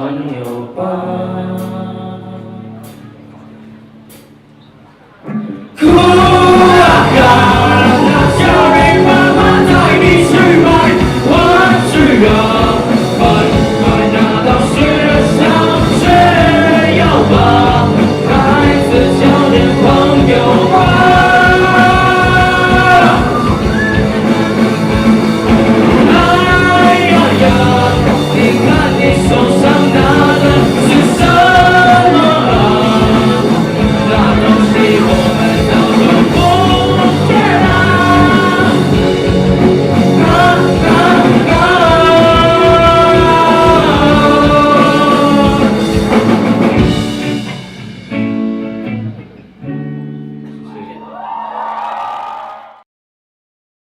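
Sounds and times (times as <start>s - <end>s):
person singing: 0.0s - 4.3s, 5.3s - 24.5s, 25.6s - 46.4s
live rock band playing: 2.8s - 51.0s.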